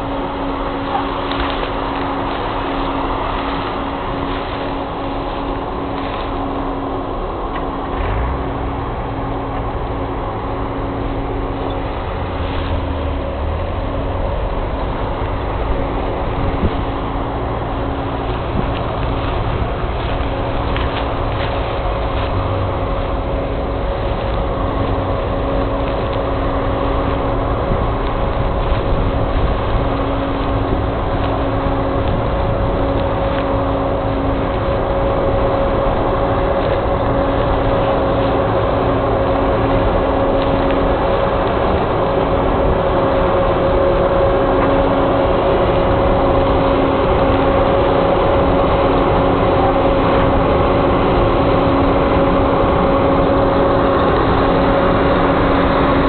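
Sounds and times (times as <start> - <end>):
combine harvester running: 0.0 - 56.0.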